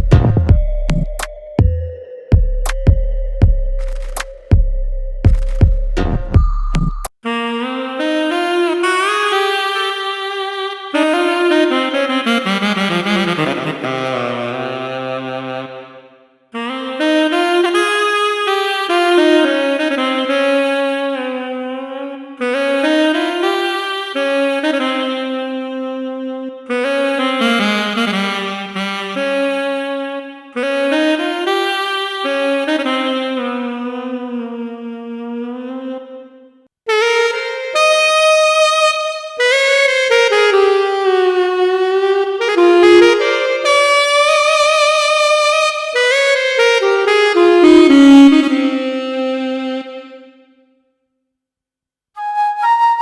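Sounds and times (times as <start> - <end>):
keytar wind voice melody: 7.2 - 16.0, 16.6 - 31.5, 39.7 - 50.3.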